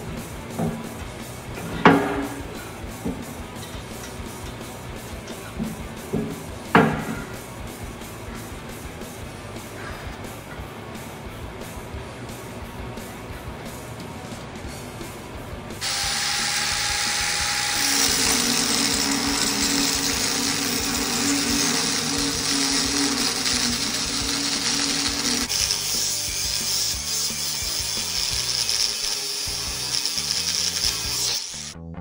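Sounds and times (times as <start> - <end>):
power tool running: 15.8 - 31.8.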